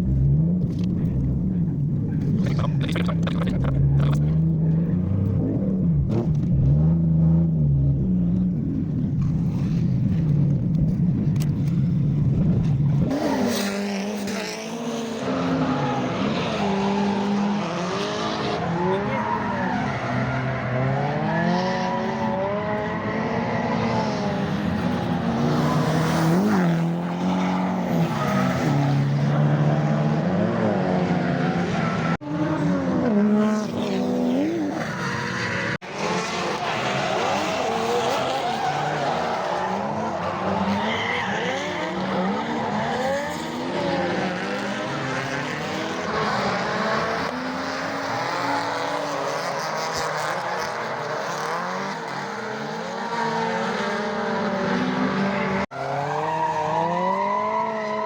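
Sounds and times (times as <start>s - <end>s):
car engines revving: 0.0s - 58.0s
tyres squealing and skidding: 13.0s - 32.9s, 33.6s - 58.0s.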